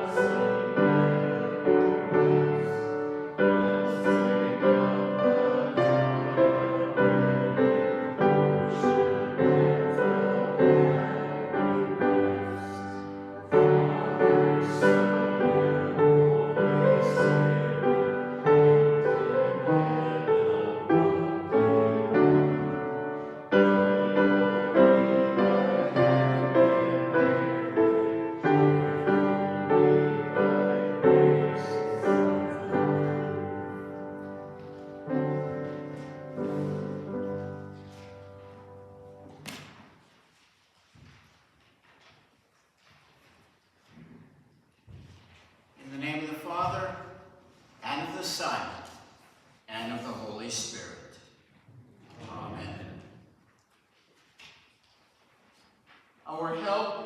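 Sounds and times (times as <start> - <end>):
piano playing hymn chords: 0.0 - 39.8.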